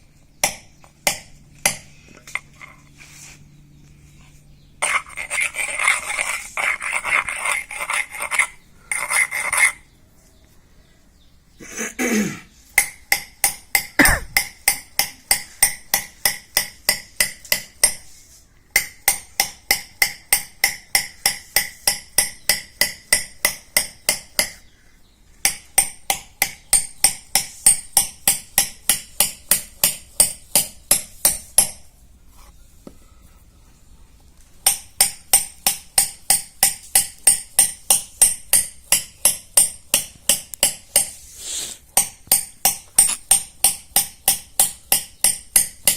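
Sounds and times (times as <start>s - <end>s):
scraping on stone: 2.0s - 3.6s, 4.2s - 10.0s
hammer striking stone: 12.8s - 18.0s, 18.8s - 24.6s, 25.4s - 31.9s, 34.6s - 41.1s, 41.9s - 45.9s.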